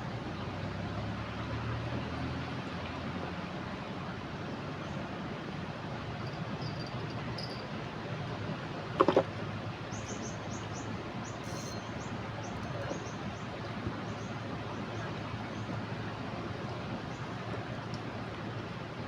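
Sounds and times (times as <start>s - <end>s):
sharp knocks: 9.0s - 9.3s
short high chirps: 11.4s - 12.0s.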